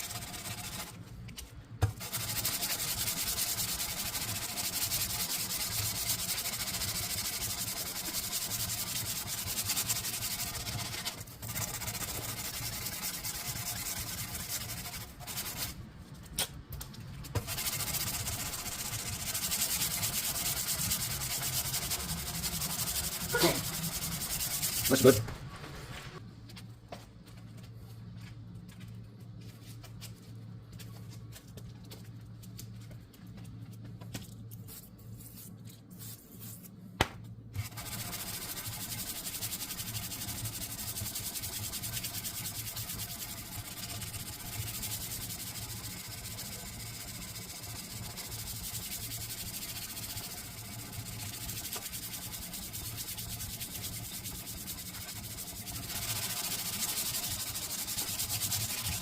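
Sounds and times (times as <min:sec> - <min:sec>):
sanding steel blade: 0:00.0 - 0:01.0, 0:02.0 - 0:15.8, 0:17.4 - 0:25.2, 0:37.6 - 0:59.0.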